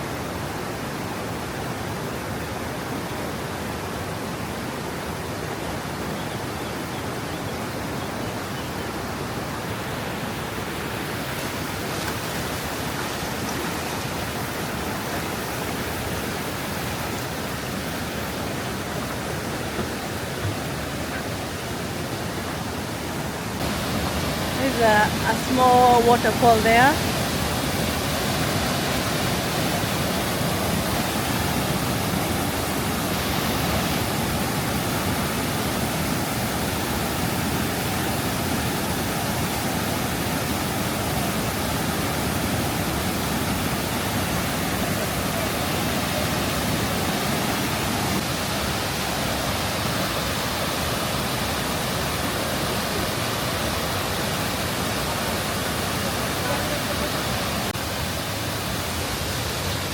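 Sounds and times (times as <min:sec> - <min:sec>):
waterfall roaring: 0:00.0 - 0:59.9.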